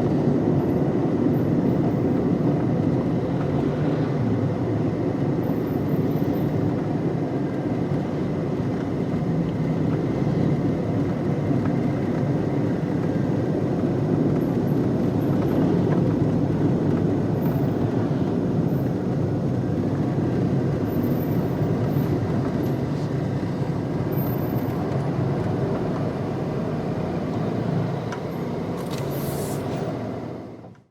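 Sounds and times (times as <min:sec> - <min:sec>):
car engine and road rumble: 0:00.0 - 0:30.9.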